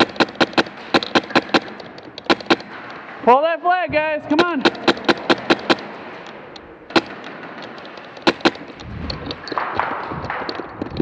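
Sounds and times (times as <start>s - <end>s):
airsoft gun shots: 0.0s - 3.2s, 4.3s - 6.2s, 6.9s - 8.8s.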